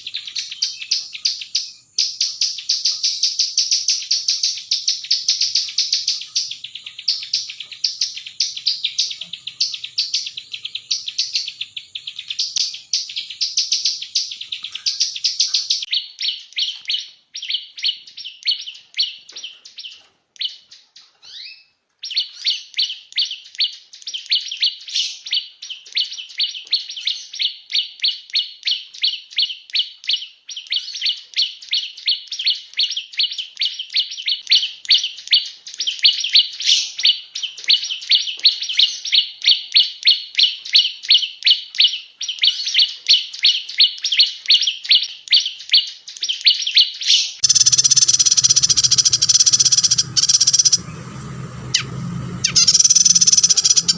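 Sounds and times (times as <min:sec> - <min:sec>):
high bird chirps: 0:00.0 - 0:29.5, 0:41.5 - 0:53.9.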